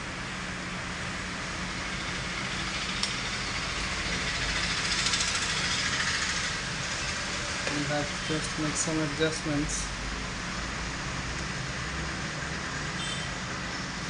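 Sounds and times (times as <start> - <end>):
road traffic: 0.0 - 14.0.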